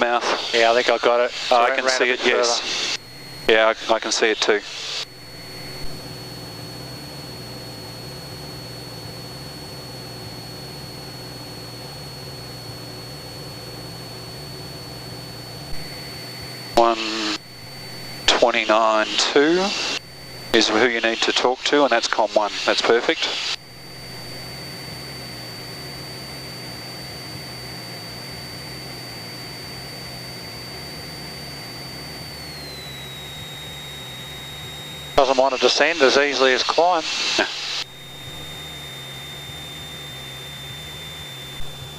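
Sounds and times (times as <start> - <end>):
intercom hiss: 0.0 - 5.9, 16.7 - 24.5, 35.2 - 38.4
light aircraft engine and propeller drone: 0.0 - 41.9
thin high whine: 0.0 - 41.9.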